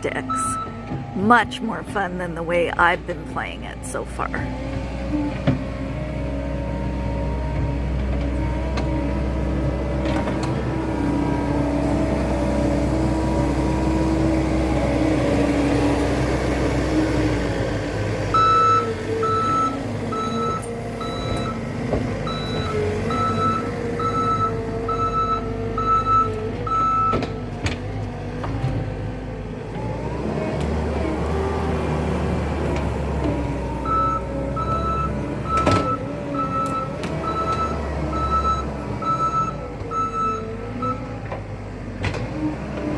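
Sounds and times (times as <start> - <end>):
reversing alarm beeping: 0.0 - 3.8, 18.3 - 21.6, 22.2 - 27.2, 33.7 - 41.1
skid steer engine working: 0.0 - 42.9.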